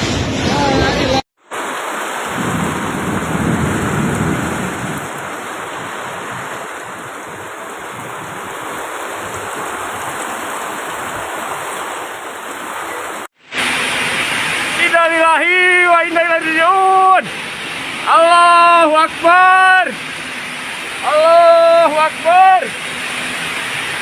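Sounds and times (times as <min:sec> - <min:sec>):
strong storm wind rushing: 0:00.0 - 0:13.3
wind rumble on microphone: 0:02.3 - 0:11.8.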